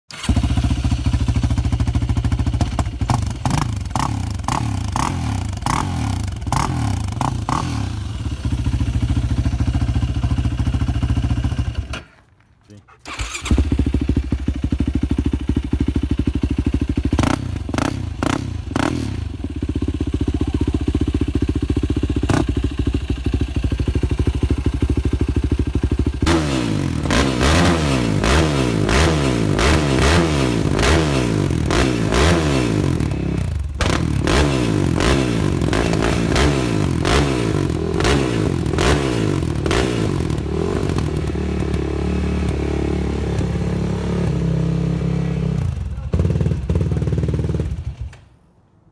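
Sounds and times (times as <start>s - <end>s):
engine revving: 0.1s - 12.0s, 16.4s - 47.8s
quad engine idling: 0.1s - 12.0s, 13.1s - 29.6s, 35.4s - 47.9s.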